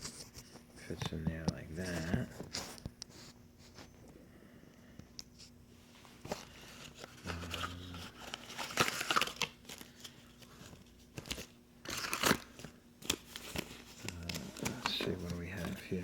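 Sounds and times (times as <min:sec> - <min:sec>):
packaging rustling and crinkling: 0:06.0 - 0:16.0.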